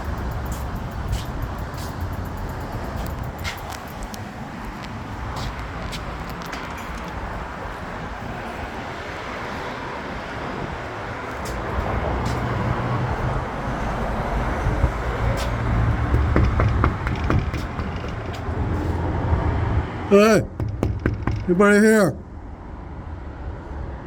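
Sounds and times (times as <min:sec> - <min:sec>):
road noise hiss: 0:00.0 - 0:20.1
vehicle engine rumble: 0:12.1 - 0:21.5.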